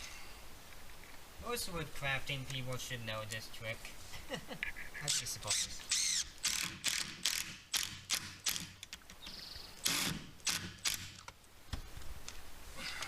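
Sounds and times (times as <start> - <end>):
hand tool ratcheting clicks: 5.0 - 9.0.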